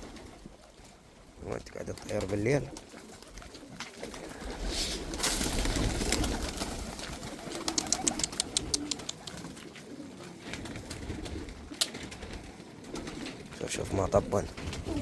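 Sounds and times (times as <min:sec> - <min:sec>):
pigeons cooing: 0:00.0 - 0:15.0
rustling: 0:03.0 - 0:13.5
sharp clicks: 0:07.6 - 0:09.4.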